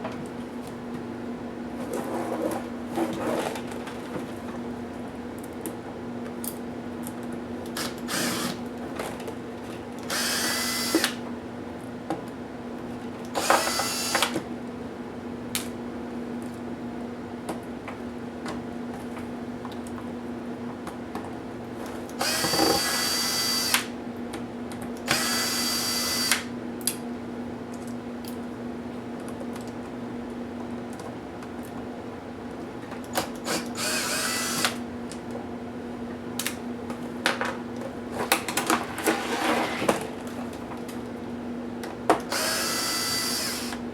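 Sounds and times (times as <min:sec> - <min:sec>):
electric screwdriver whining: 0:07.8 - 0:08.6, 0:10.1 - 0:11.2, 0:13.4 - 0:14.4, 0:22.2 - 0:23.9, 0:25.1 - 0:26.5, 0:33.4 - 0:34.8, 0:42.3 - 0:43.8.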